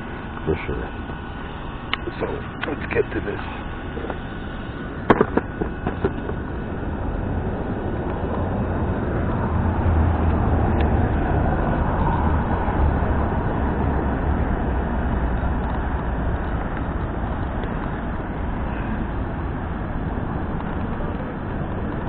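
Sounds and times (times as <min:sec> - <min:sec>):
toy truck drivetrain and tyres rumbling: 0:02.6 - 0:22.0.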